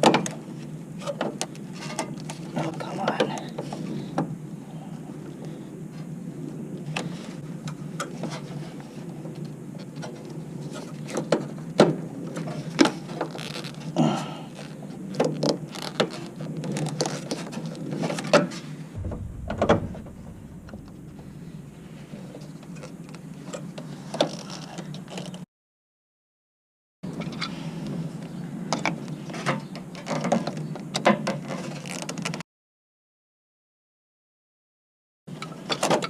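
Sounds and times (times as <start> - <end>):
steady low hum: 19.0 - 23.2.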